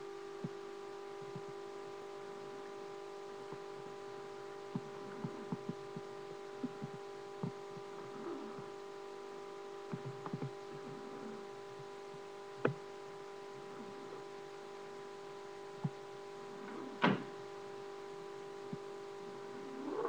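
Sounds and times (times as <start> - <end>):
electrical hum: 0.0 - 20.0
animal snoring softly: 4.7 - 6.0, 6.6 - 8.8, 9.9 - 11.9, 16.5 - 17.1, 19.3 - 20.0.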